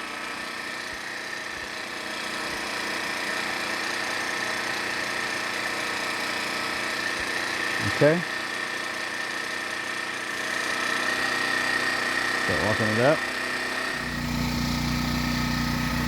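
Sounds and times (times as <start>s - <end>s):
generator engine running: 10.6s - 16.0s.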